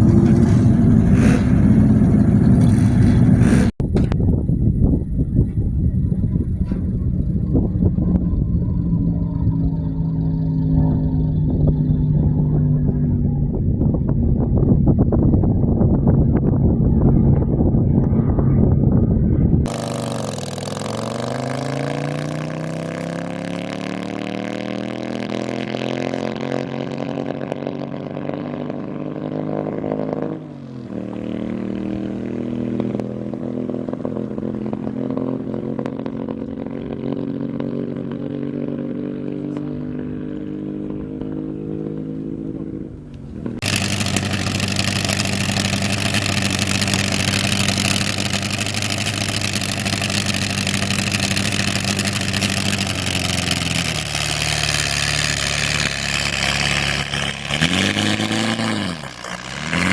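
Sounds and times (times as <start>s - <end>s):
race car engine revving: 19.7s - 27.6s, 39.6s - 59.9s.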